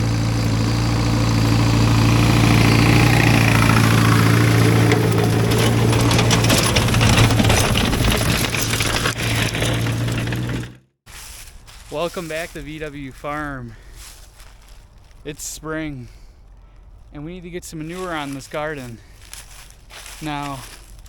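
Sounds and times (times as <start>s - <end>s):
rapid clattering and rattling: 0.0s - 10.8s
tractor engine running: 0.0s - 21.0s.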